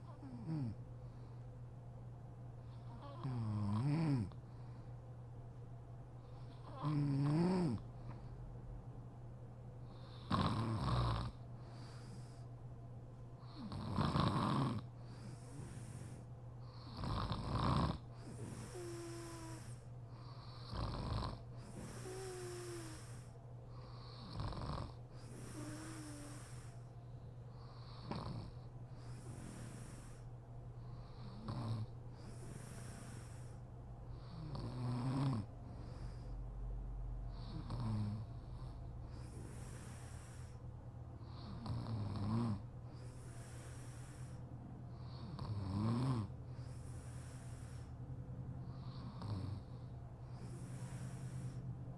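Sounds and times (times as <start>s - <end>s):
woman snoring: 0.0s - 0.8s, 2.8s - 4.4s, 6.6s - 7.9s, 10.0s - 11.4s, 13.5s - 16.2s, 16.8s - 23.3s, 24.0s - 26.8s, 27.8s - 30.2s, 31.1s - 33.6s, 34.2s - 35.5s, 37.3s - 38.7s, 41.3s - 44.4s, 45.0s - 47.9s, 48.8s - 49.7s
breathy exhales: 39.0s - 40.7s, 46.5s - 51.8s.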